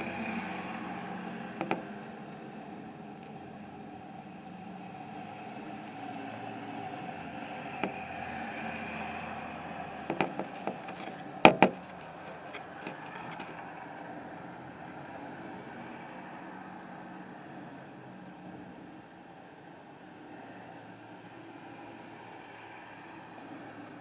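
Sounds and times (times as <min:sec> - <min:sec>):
street traffic hum: 0:00.0 - 0:24.0
sharp clicks and knocks: 0:01.6 - 0:02.0, 0:07.8 - 0:08.0, 0:10.0 - 0:13.7.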